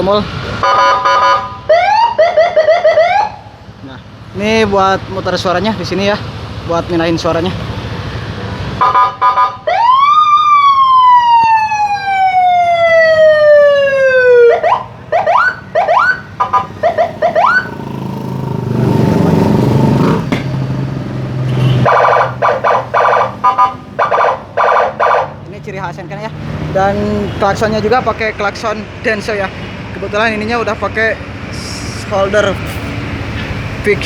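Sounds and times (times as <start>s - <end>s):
electronic police siren: 0.6s - 3.5s, 8.8s - 17.8s, 21.9s - 25.4s.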